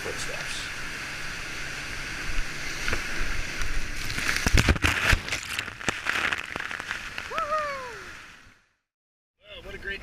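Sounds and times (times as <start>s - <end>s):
person shouting: 7.3s - 8.1s.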